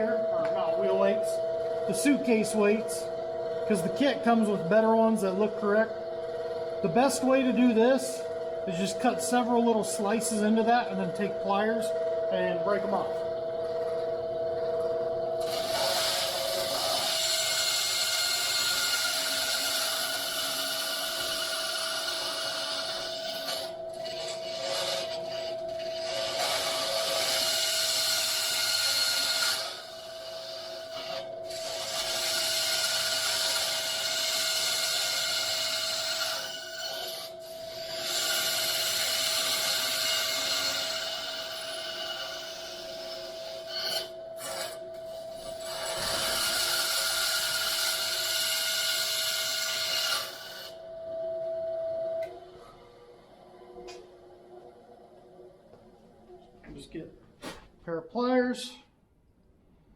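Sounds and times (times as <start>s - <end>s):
power saw cutting metal: 0.0s - 50.8s.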